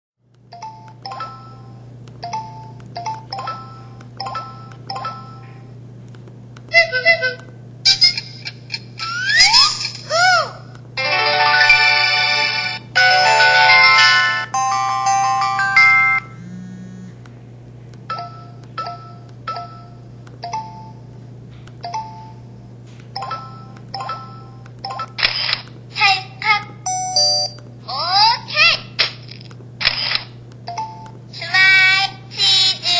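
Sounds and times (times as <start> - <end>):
steady low hum: 0.2 - 11.1, 12.3 - 32.9
phone bell-like chime: 13.0 - 16.4
phone keypad beeps: 26.9 - 27.6.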